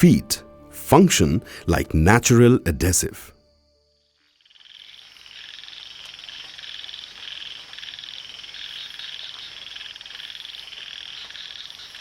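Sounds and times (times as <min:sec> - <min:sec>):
frogs calling: 0:04.0 - 0:12.0.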